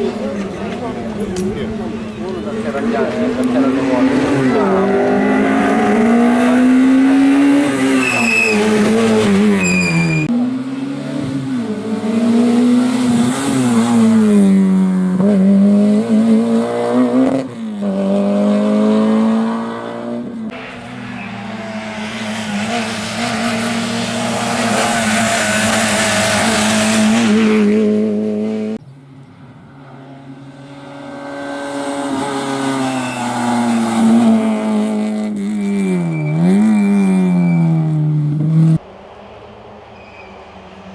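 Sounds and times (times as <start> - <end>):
rally car engine revving: 0.0 - 28.8, 29.9 - 40.9
short high squeals: 7.8 - 10.3, 32.8 - 33.6.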